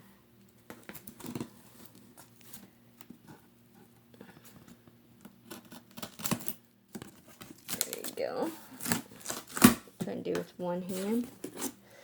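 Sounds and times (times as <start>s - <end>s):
scissors cutting packing tape: 5.5s - 8.2s, 8.8s - 9.8s.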